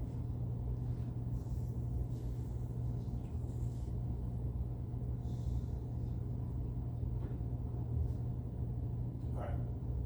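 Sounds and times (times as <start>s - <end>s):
low room hum and rumble: 0.0s - 10.0s
soft rustles: 0.8s - 4.2s.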